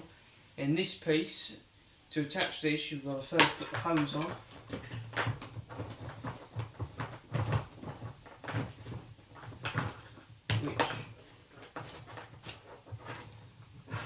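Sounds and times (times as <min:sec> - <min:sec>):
plastic hose knocks and clicks: 0:03.4 - 0:13.4.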